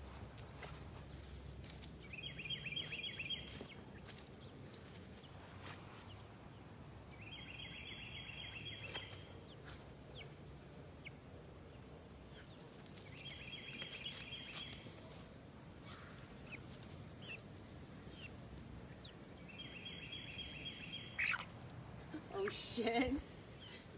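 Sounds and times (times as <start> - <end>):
chickens scrambling: 8.5 - 23.9.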